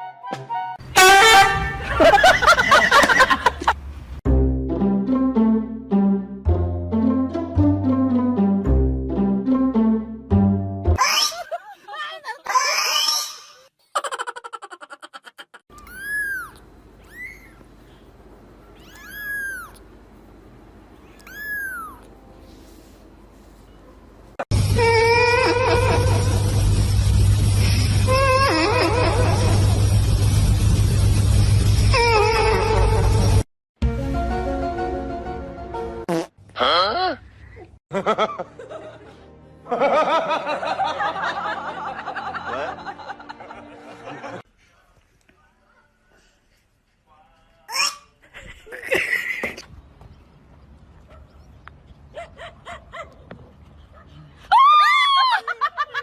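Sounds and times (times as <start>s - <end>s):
music: 0.0s - 0.8s, 4.3s - 11.0s, 33.0s - 36.1s, 38.3s - 44.4s
laughter in rapid bursts: 1.7s - 3.8s, 11.2s - 12.6s, 13.8s - 15.6s, 28.5s - 29.8s, 37.9s - 44.4s, 55.1s - 56.0s
cat meowing: 18.7s - 19.8s, 21.0s - 22.1s.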